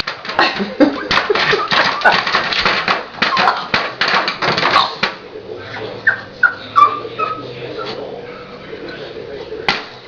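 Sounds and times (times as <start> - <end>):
dog whimpering: 5.8 - 8.0.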